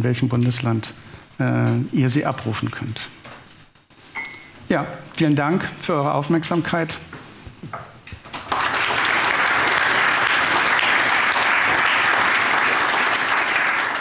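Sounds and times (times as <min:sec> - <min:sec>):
audience applauding: 0:08.3 - 0:14.0.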